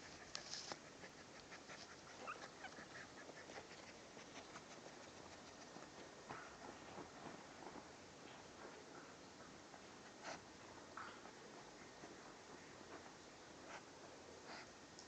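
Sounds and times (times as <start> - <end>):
puppies squeaking and grunting: 1.2 - 4.0.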